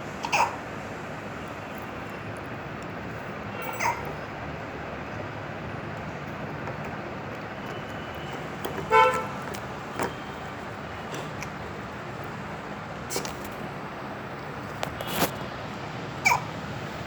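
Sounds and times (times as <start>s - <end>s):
baby hiccupping: 0.2s - 0.6s, 3.7s - 4.2s, 16.2s - 16.6s.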